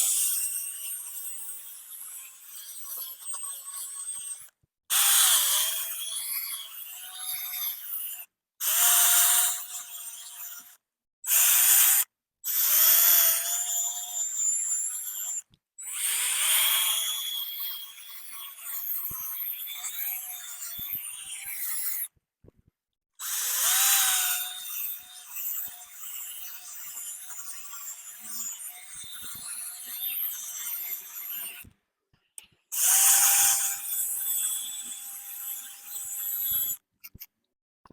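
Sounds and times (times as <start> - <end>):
power drill motor whine: 23.2 - 25.1.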